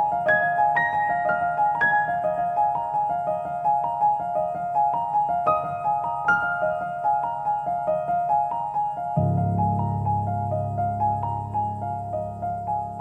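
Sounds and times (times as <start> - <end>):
gentle repeating piano music: 0.0 - 13.0.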